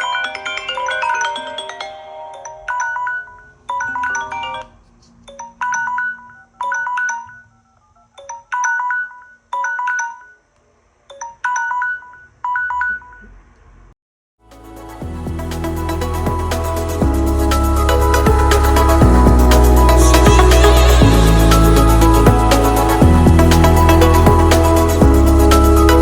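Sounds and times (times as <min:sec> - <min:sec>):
smartphone ringtone melody: 0:00.0 - 0:10.4, 0:11.1 - 0:13.2, 0:16.0 - 0:26.0
dense electronic tone: 0:15.0 - 0:26.0.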